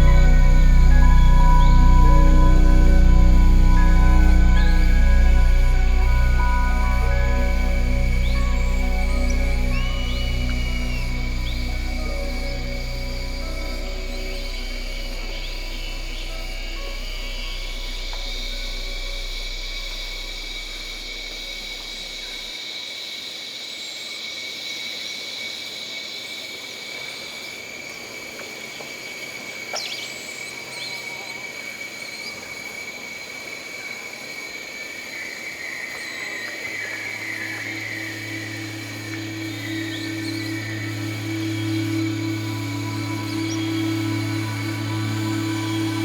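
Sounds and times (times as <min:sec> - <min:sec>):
high insect trilling: 0:00.0 - 0:22.5, 0:35.9 - 0:46.0
low steady hum: 0:00.0 - 0:22.5, 0:36.8 - 0:46.0
warbling bird call: 0:00.0 - 0:22.5, 0:36.5 - 0:46.0.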